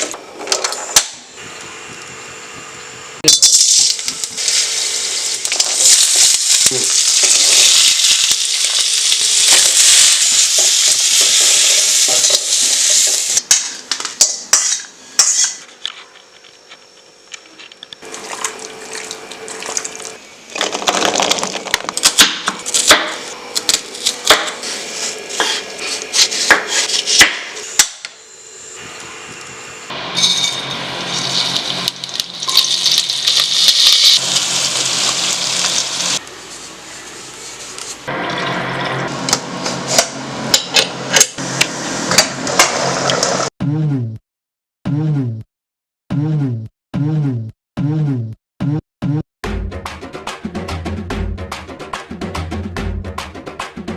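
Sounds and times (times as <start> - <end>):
food sizzling in hot oil: 3.2 - 13.4, 22.0 - 27.8, 29.9 - 38.8
metal utensils clattering against pot: 30.2 - 33.0.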